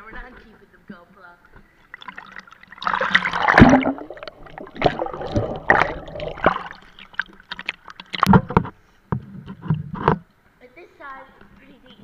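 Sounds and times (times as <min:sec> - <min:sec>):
water splashing in a pool: 0:01.9 - 0:08.6.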